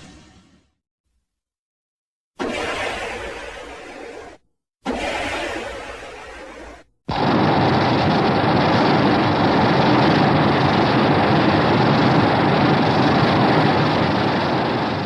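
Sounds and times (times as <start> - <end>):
harsh monster rumble: 7.1 - 15.0.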